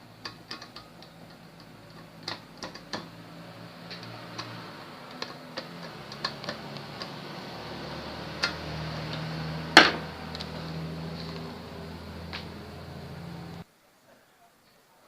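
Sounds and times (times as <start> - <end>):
parts clicking and tapping: 0.0 - 10.6.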